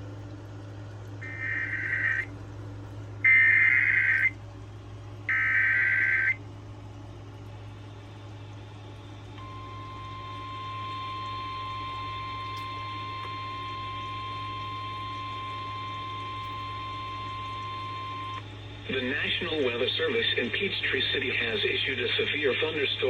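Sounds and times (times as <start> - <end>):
screeching digital data tones: 1.2 - 2.3, 3.3 - 4.3, 5.3 - 6.4
steady warning alarm tone: 1.2 - 2.3, 3.2 - 4.4, 5.3 - 6.4, 9.4 - 22.0
radio low hum: 1.2 - 2.4, 3.2 - 4.4, 5.3 - 6.4, 11.7 - 23.0.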